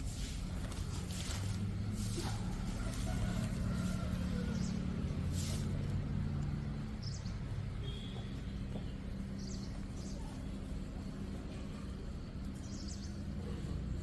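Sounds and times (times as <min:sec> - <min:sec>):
low mechanical hum: 0:00.0 - 0:14.0.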